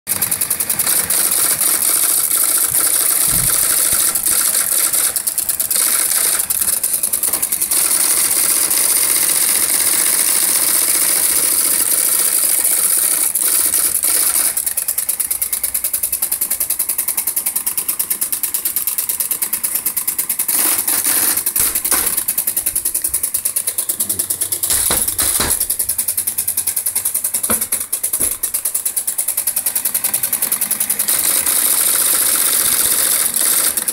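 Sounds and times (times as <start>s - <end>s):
electric typewriter clatter: 0.1s - 33.9s.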